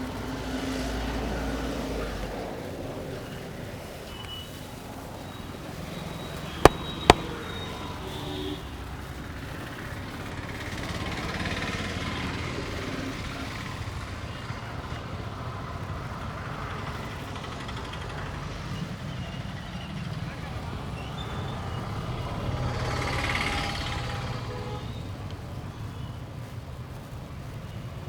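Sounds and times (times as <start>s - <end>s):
street traffic noise: 0.0s - 28.0s.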